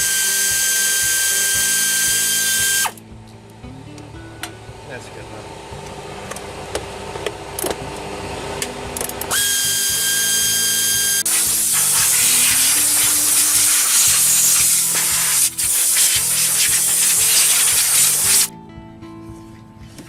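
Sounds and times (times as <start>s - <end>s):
background music: 0.0s - 20.0s
whistle over air hiss: 9.4s - 18.5s
compressed air blow gun hissing: 11.2s - 18.5s.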